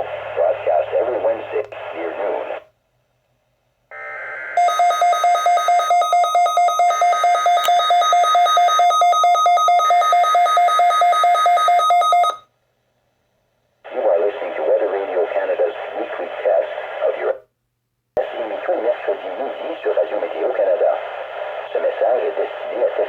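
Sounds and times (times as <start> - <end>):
digital data tones: 4.0 - 12.4
pulsing electronic alarm beep: 4.0 - 12.4.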